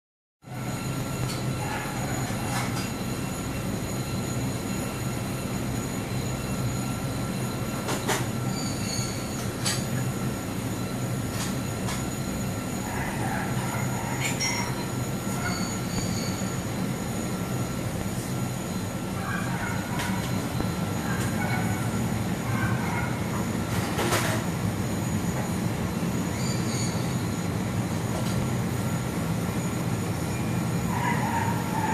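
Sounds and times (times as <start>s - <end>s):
air conditioner compressor running: 0.4s - 31.9s
high-pitched whines: 0.4s - 31.9s.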